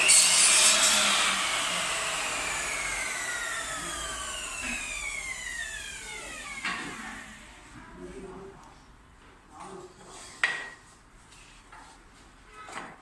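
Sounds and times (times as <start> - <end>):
power tool motor winding down: 0.0 - 7.6.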